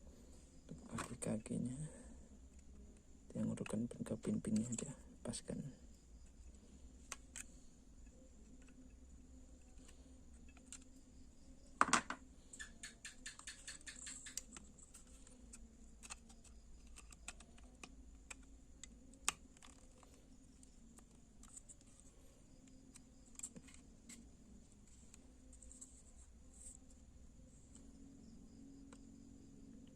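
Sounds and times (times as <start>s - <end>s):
small plastic and metal parts clicking: 4.3s - 5.0s, 7.0s - 9.0s, 9.6s - 11.0s, 11.8s - 22.1s, 22.8s - 24.3s.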